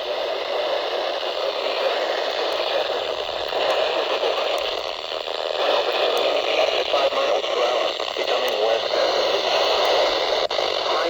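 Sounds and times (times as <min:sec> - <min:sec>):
radio static hiss: 0:00.0 - 0:11.0
faint distant radio broadcast: 0:01.2 - 0:11.0.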